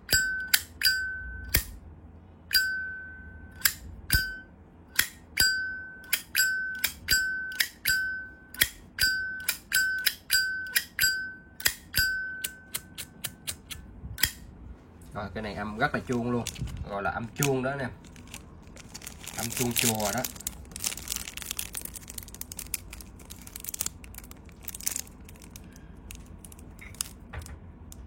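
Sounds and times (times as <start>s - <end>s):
bell-like metal ring: 0.0s - 1.6s, 2.5s - 4.5s, 5.4s - 13.0s.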